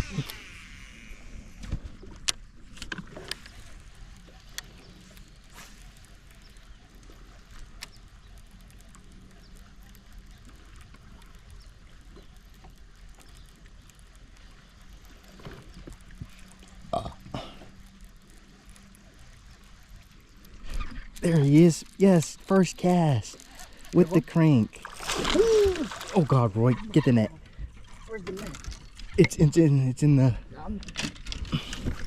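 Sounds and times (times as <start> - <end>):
light clicks and taps: 17.6 - 21.2.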